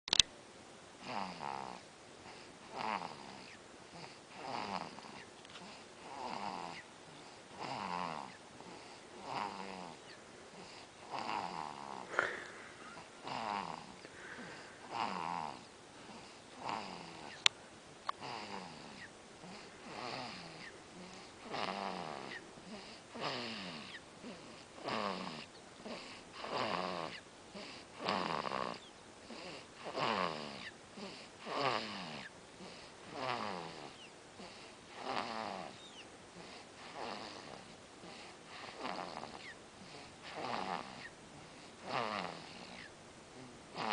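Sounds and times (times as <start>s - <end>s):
rhythmic snoring: 1.0s - 17.5s, 18.1s - 43.9s.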